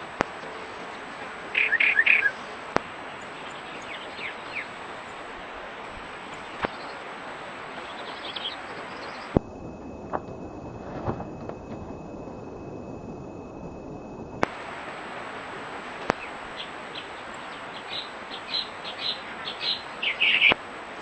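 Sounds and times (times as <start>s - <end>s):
songbirds chirping: 0.0s - 21.0s
steady outdoor hiss: 0.0s - 21.0s.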